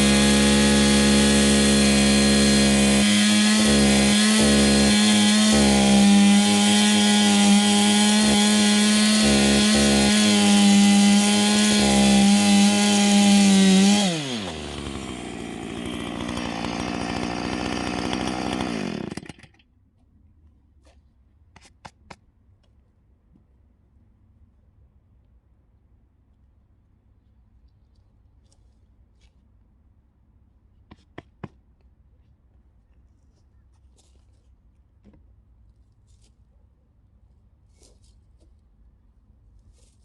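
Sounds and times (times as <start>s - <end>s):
chainsaw engine cutting wood: 0.0s - 19.6s.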